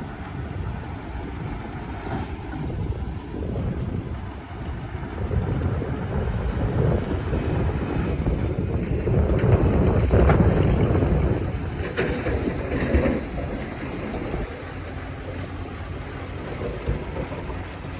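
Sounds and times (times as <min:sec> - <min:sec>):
excavator engine under load: 0:00.0 - 0:17.9.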